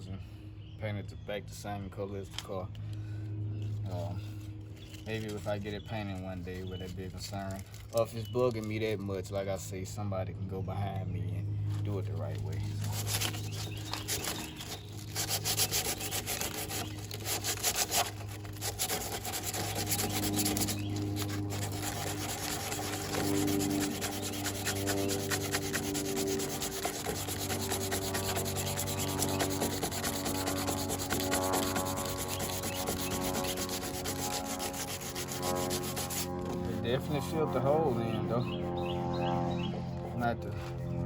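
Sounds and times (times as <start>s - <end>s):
sandpaper rubbing by hand: 5.1s - 7.6s, 11.8s - 41.0s.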